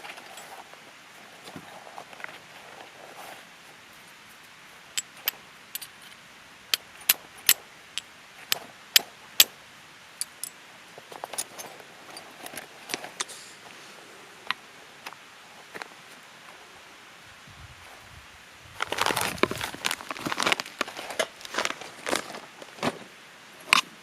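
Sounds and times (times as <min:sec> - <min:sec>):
stream hissing: 0:03.2 - 0:20.0
metal items clicking and clinking: 0:05.0 - 0:06.2, 0:10.2 - 0:13.3
soft rustling: 0:18.7 - 0:23.1.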